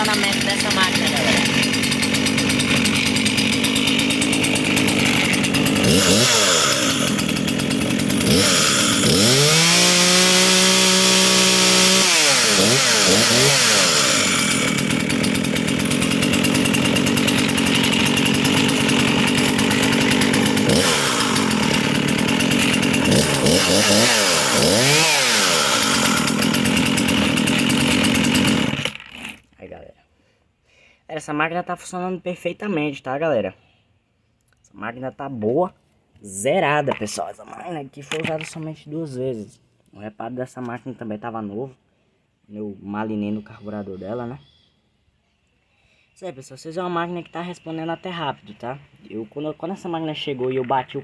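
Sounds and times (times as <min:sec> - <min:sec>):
chainsaw idling and revving: 0:00.0 - 0:29.5.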